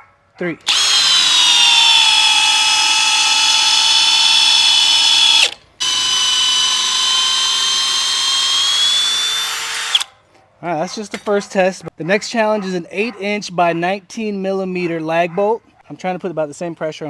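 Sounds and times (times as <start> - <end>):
hammer drill motor whine: 0.6 - 10.1.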